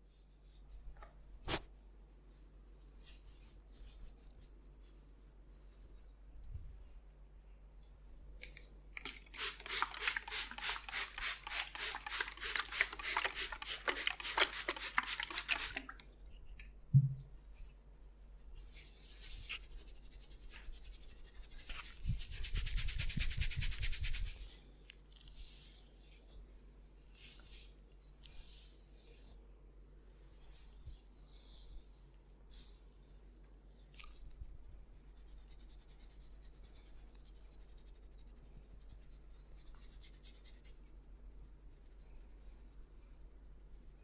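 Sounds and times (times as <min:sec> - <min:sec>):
hands rubbing skin and hair: 0:00.0 - 0:07.0, 0:08.4 - 0:16.0, 0:16.7 - 0:29.4, 0:30.0 - 0:44.0
loud thump: 0:17.0 - 0:17.2.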